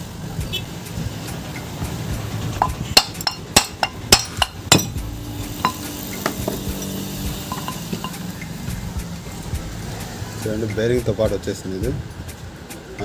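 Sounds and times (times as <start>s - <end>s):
tool knocking on metal cover: 2.6s - 6.6s, 7.5s - 8.1s.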